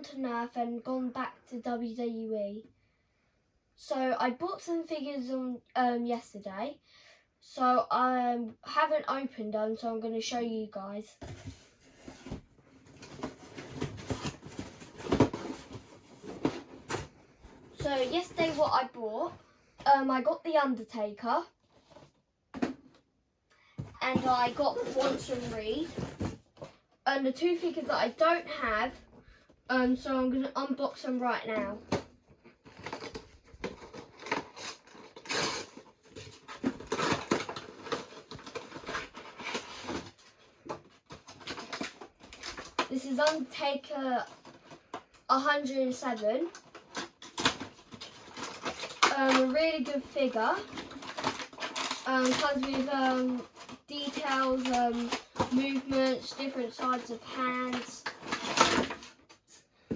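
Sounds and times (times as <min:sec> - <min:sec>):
boxes being handled: 0:11.1 - 0:19.4, 0:23.8 - 0:26.9, 0:31.4 - 0:45.2, 0:46.0 - 0:59.3
packaging rustling and clicking: 0:11.2 - 0:18.7, 0:24.1 - 0:26.9, 0:31.6 - 0:43.5, 0:44.2 - 0:45.2, 0:46.1 - 0:59.4
packaging tearing: 0:32.7 - 0:43.5, 0:46.5 - 0:59.2.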